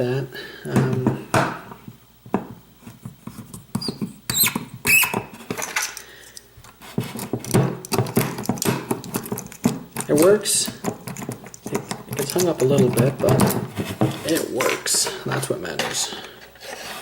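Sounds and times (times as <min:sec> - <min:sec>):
high squeaks: 0:03.8 - 0:05.3.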